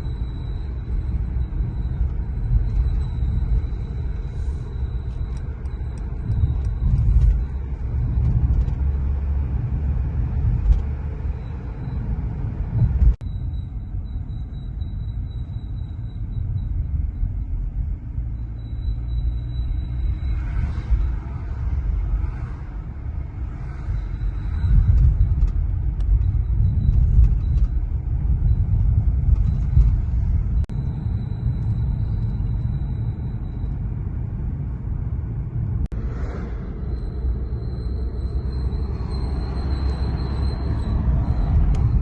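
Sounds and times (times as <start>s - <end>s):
high-pitched brake whistle: 0.0s - 7.7s, 18.3s - 21.8s, 30.7s - 33.9s, 36.2s - 42.0s
car driving rumble: 0.0s - 42.0s.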